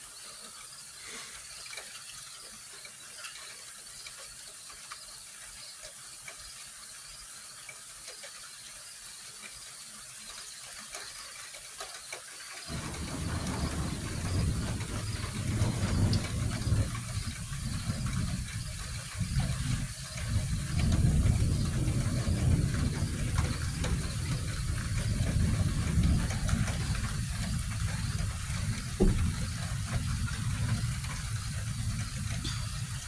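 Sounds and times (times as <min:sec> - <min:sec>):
heavy rain pouring: 0:12.7 - 0:33.0
low wavering rumble: 0:12.7 - 0:33.0
brief thump: 0:29.0 - 0:29.7.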